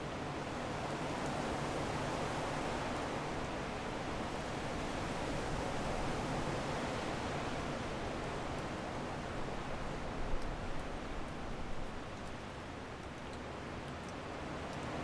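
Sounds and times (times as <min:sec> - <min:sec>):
faint sharp ticks: 0:12.1 - 0:12.4.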